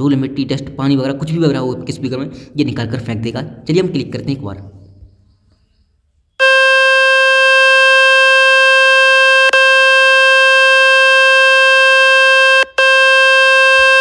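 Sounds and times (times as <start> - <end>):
loud buzzing tone from speaker: 6.4 - 14.0.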